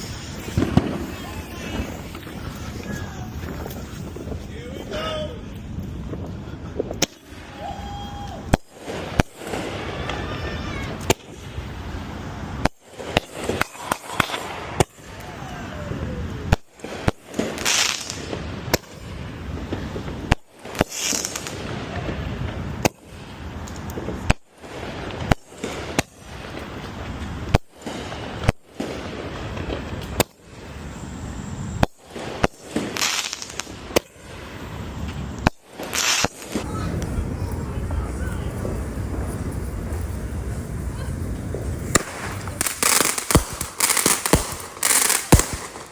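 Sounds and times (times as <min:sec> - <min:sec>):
fireworks bangs: 0:00.0 - 0:04.5, 0:31.8 - 0:34.4, 0:35.6 - 0:45.9
fireworks crackling: 0:00.0 - 0:45.9.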